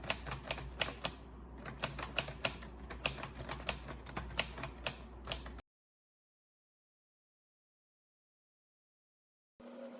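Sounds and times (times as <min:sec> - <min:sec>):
typewriter keys clicking: 0:00.0 - 0:05.6.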